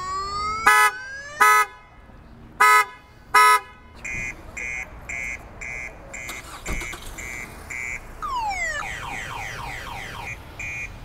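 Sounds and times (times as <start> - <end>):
car alarm siren: 0.0 - 1.7, 4.1 - 11.0.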